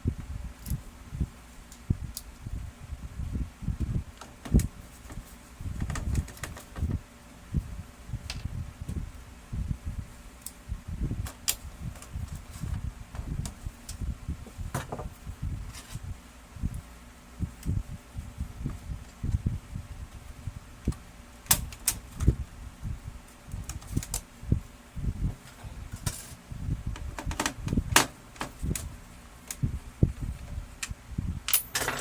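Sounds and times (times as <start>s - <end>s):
low knocks of printer parts: 14.7s - 15.2s
plastic parts knocking and clicking: 27.0s - 28.6s.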